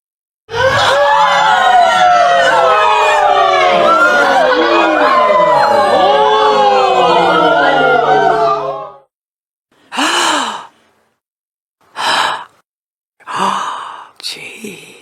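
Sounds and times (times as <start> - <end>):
crowd crying out: 0.5 - 9.1.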